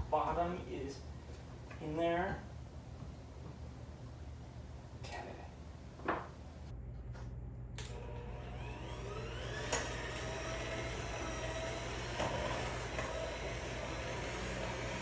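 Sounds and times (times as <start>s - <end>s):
electric mixer motor whine: 7.8s - 15.0s.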